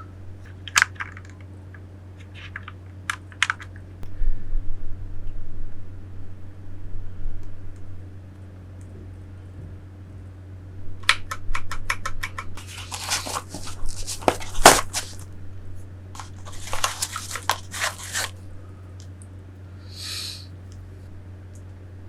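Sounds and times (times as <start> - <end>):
wrapping crinkling and tearing: 12.6 - 15.3, 16.2 - 18.5.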